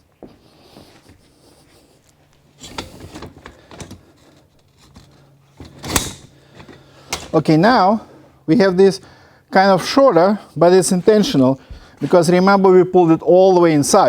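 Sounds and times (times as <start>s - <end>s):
metal poles scraping and knocking: 2.6s - 7.4s.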